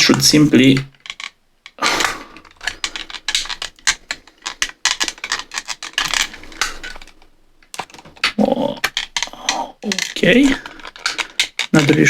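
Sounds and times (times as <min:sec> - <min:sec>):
plastic mouse shell clicking and rattling: 0:00.6 - 0:12.0.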